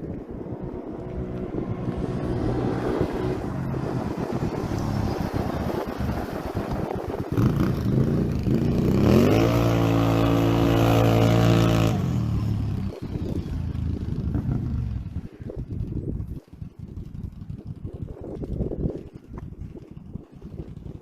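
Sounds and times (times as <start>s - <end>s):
atv engine revving: 0.3s - 16.4s.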